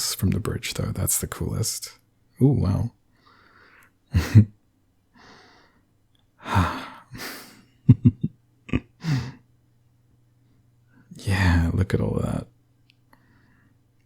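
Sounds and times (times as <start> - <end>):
man breathing with gasps: 5.2 - 7.6, 9.0 - 9.4.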